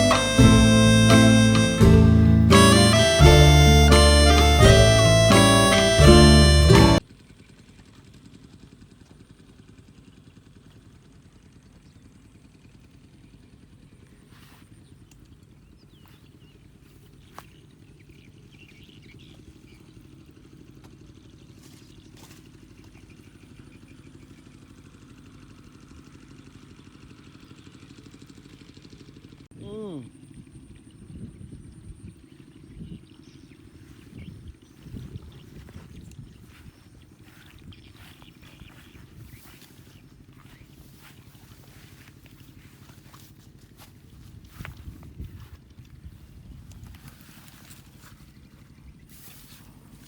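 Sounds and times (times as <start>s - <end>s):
music: 0.0s - 7.0s
small engine droning: 0.0s - 50.0s.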